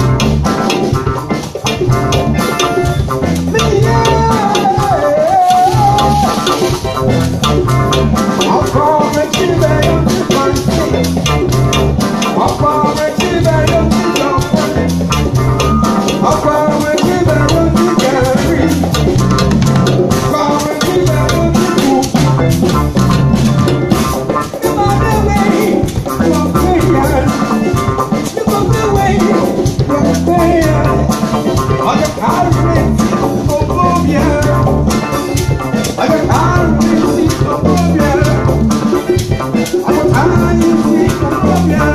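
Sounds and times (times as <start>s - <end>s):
drum kit: 0.0s - 41.9s
melodic instruments: 0.0s - 41.9s
rhythmic bass line: 0.0s - 41.9s.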